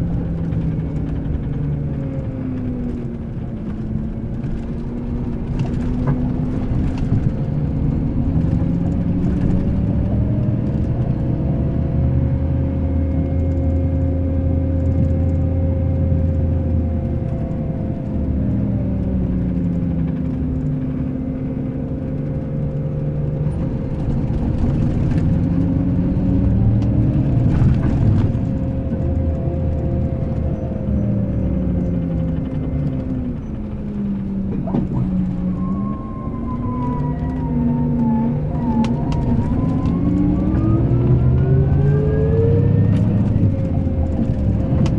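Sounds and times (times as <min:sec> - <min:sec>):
coach diesel engine running: 0:00.0 - 0:44.9
steady whine: 0:14.3 - 0:44.9.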